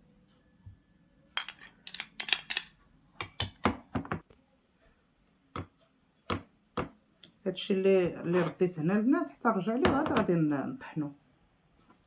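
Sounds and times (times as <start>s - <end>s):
metal spoon clinking on dish: 1.4s - 3.6s.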